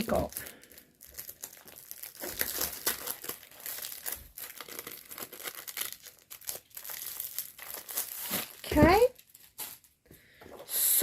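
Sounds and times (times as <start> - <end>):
packaging crinkling: 0.0 - 10.0.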